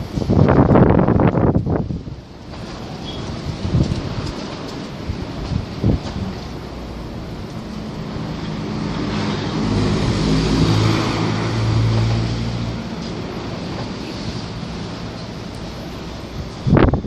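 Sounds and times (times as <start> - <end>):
wind on microphone: 0.0 - 17.0
motor engine passing: 5.8 - 16.8.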